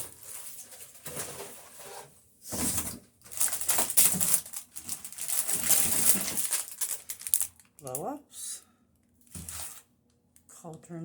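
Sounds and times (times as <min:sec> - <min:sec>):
plastic packaging rustling: 0:00.0 - 0:08.1, 0:09.2 - 0:09.9.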